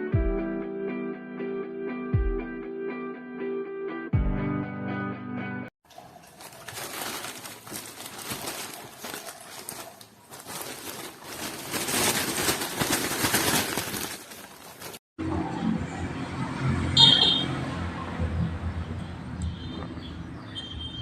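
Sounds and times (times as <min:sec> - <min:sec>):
plastic crinkling and rustling: 0:05.9 - 0:15.0.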